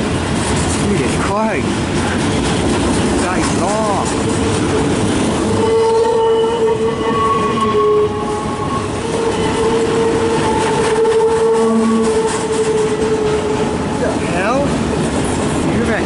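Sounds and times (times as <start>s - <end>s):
freight cars rumbling and clattering: 0.0s - 7.5s, 8.2s - 16.0s
wheel squealing whine: 4.3s - 14.0s.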